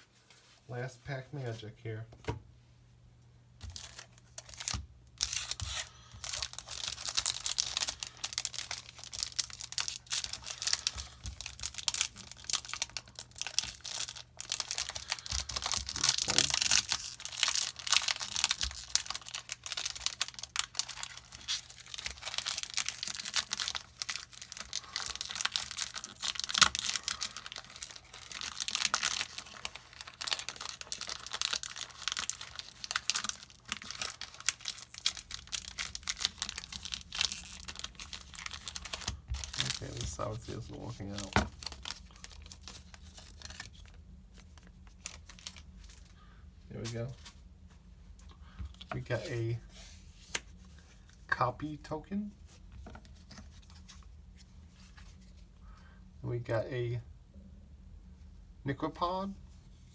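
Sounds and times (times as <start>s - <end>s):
plastic wrapper crinkling and tearing: 3.6s - 46.2s.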